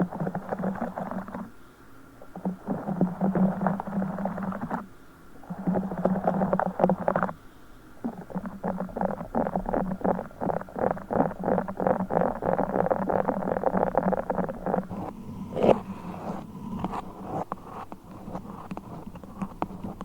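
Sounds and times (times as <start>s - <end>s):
wax sheet crackling and tapping: 8.1s - 20.0s.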